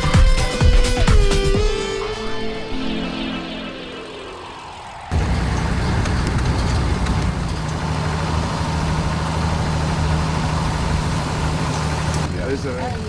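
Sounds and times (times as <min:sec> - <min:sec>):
vehicle engine rumble from inside: 0:05.1 - 0:13.0.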